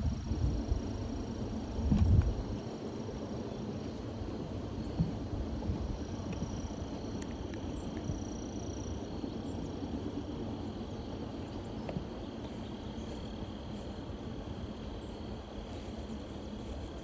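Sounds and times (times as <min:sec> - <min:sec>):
steady low rumble: 0:00.0 - 0:08.3.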